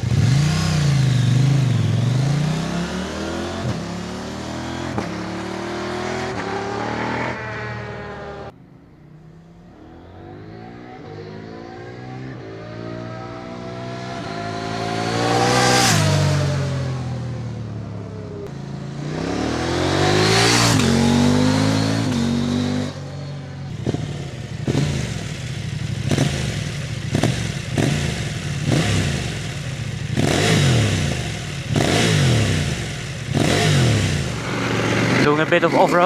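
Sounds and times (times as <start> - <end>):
motorcycle throttle bursts: 0.0 - 5.2, 23.7 - 36.0
motorcycle engine passing: 9.6 - 36.0.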